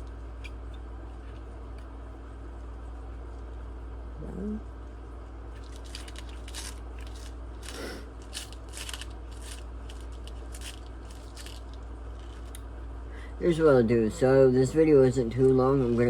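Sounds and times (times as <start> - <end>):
steady low hum: 0.0 - 16.0
person humming: 4.2 - 4.6
small screws clicking and rustling: 5.6 - 12.7.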